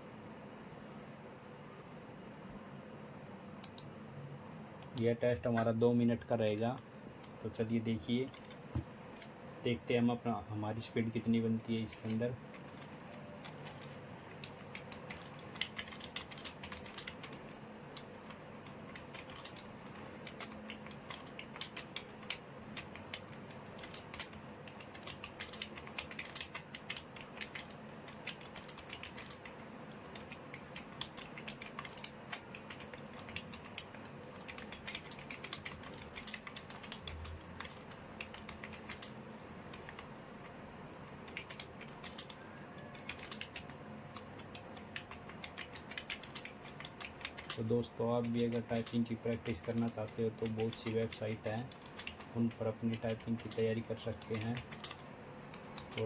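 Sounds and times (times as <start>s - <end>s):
typing on computer keyboard: 8.2s - 8.6s, 11.8s - 40.6s, 41.2s - 56.0s.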